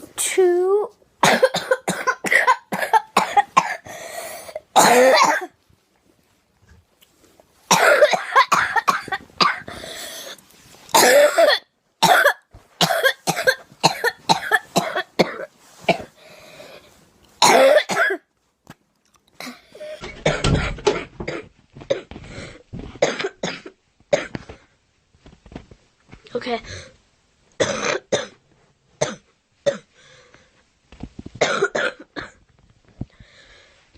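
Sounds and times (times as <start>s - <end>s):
girl coughing: 1.2s - 5.6s, 7.7s - 16.2s, 17.4s - 18.3s, 23.0s - 24.4s, 27.6s - 28.4s, 31.4s - 32.4s.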